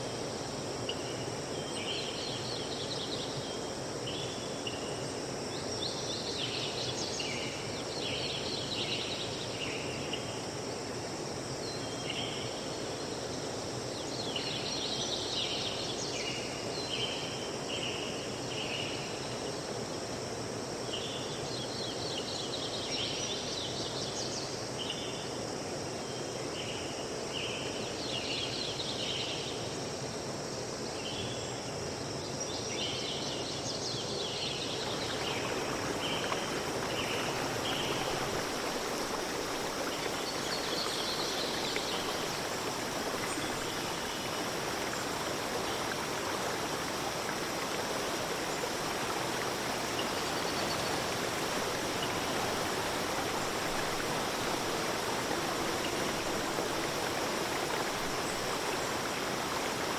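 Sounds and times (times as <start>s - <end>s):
songbirds singing: 32.7s - 59.9s
steady rushing hiss: 33.4s - 59.9s.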